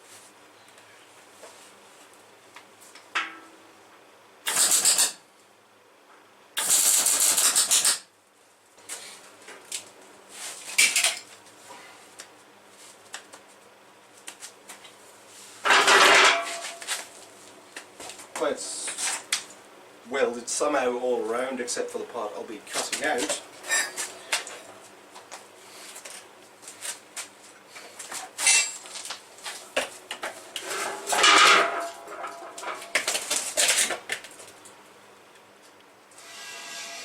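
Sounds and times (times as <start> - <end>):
arc welding crackle: 4.4 - 5.2, 6.6 - 8.1.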